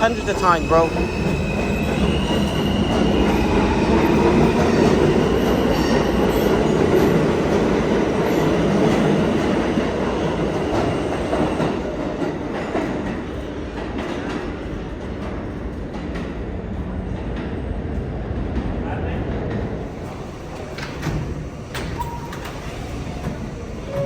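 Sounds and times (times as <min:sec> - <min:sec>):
subway train wheels rumbling: 0:00.0 - 0:24.0.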